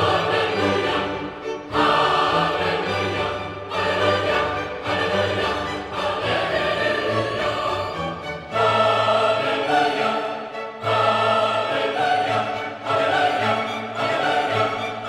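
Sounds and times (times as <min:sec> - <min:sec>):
orchestral music with choir-like voices: 0:00.0 - 0:15.0.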